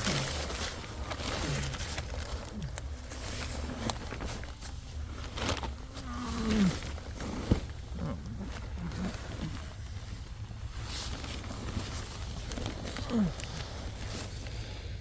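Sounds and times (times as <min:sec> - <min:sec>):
steady low hum: 0:00.0 - 0:15.0
person grunting with effort: 0:06.0 - 0:07.1.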